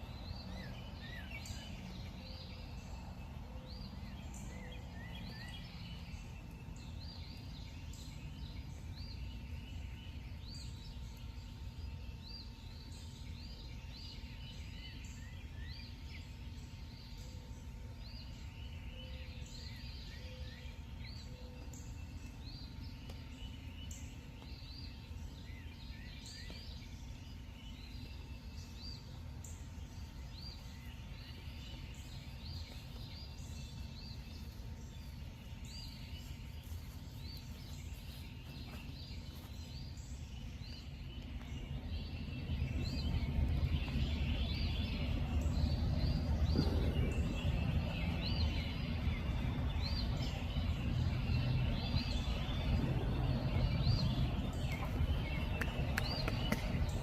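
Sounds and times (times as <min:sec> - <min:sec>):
low background rumble: 0:00.0 - 0:57.0
repeated chirping calls: 0:30.0 - 0:57.0.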